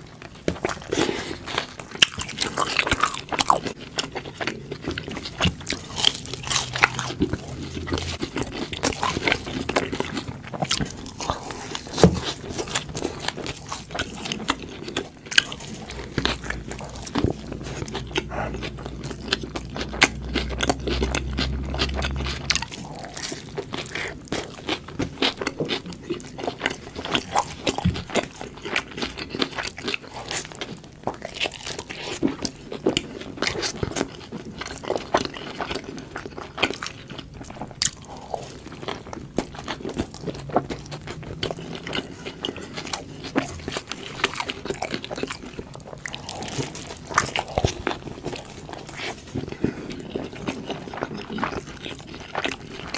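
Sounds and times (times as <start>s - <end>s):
biting and chewing burger: 0.0s - 52.9s
low hum: 15.5s - 24.6s.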